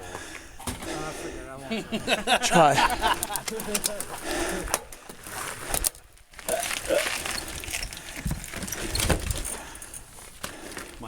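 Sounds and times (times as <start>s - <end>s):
bike rolling over rock: 3.0s - 11.0s
clicks and rattles: 3.1s - 5.0s.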